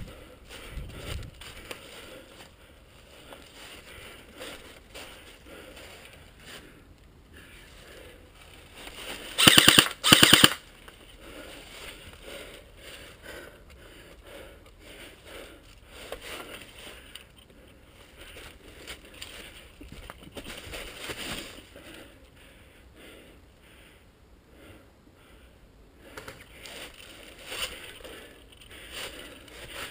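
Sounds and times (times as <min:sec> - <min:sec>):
airsoft rifle full-auto bursts: 0:09.4 - 0:10.7.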